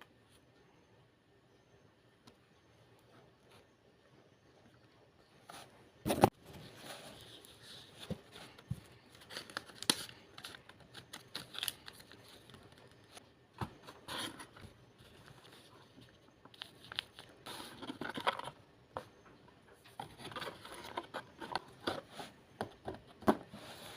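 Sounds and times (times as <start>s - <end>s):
packaging crinkling and tearing: 9.2s - 13.1s.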